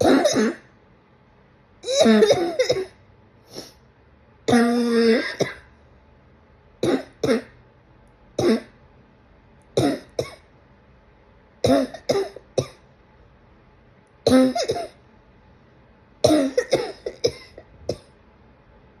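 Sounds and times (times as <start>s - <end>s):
person coughing: 0.0s - 0.7s, 1.8s - 3.8s, 4.5s - 5.7s, 6.8s - 7.6s, 8.4s - 8.8s, 9.8s - 10.4s, 11.6s - 12.8s, 14.3s - 15.0s, 16.2s - 18.1s.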